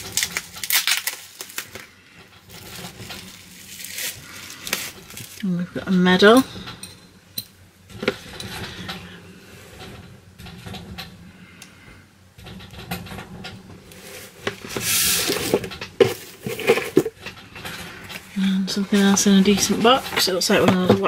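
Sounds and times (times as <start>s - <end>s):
packaging rustling: 0.0s - 5.5s, 14.0s - 17.3s.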